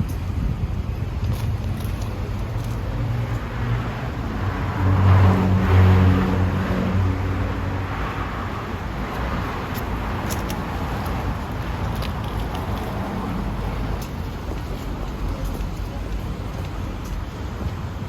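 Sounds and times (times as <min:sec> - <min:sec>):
road traffic rumble: 0:00.0 - 0:18.0
vehicle passing close by: 0:01.6 - 0:14.0.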